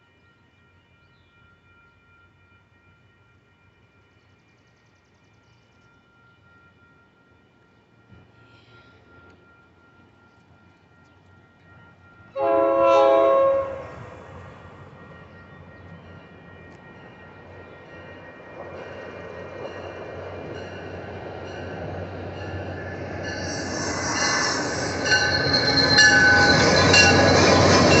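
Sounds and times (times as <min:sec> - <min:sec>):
train approaching: 0:00.0 - 0:28.0
train brakes squealing: 0:08.2 - 0:11.3, 0:21.6 - 0:28.0.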